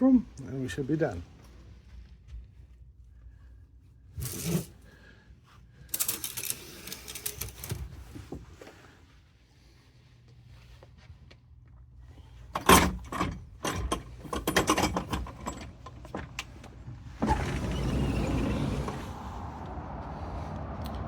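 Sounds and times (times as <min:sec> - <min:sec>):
outdoor air noise: 0:00.0 - 0:21.0
sliding door clicks and rattles: 0:12.6 - 0:19.6.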